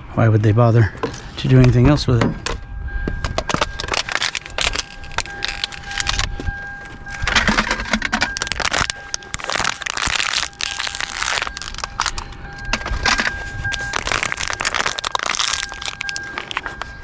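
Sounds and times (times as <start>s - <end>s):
faint steady whine: 0.0s - 17.0s
rummaging through debris: 1.0s - 17.0s.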